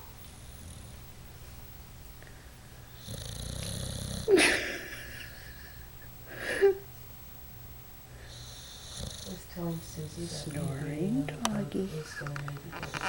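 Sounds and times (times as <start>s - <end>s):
dog snoring and snorting: 0.5s - 1.0s, 2.9s - 4.5s, 8.3s - 11.3s.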